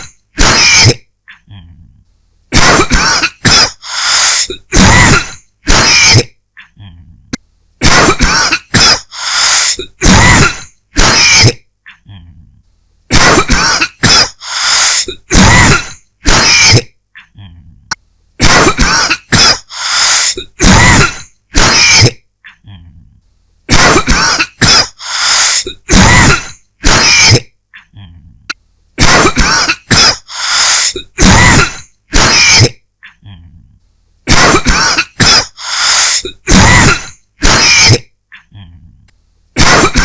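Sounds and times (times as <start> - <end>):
person dry coughing: 0.0 - 1.0, 2.5 - 6.4, 7.8 - 11.6, 13.1 - 17.0, 18.4 - 22.2, 23.7 - 27.6, 29.0 - 32.8, 34.3 - 38.1, 39.6 - 40.0.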